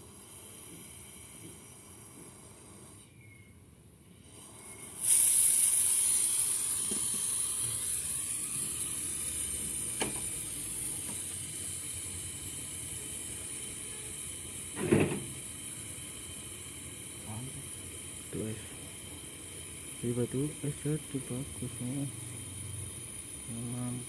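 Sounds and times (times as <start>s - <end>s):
pressurized gas hissing from pipe: 0.0s - 24.0s.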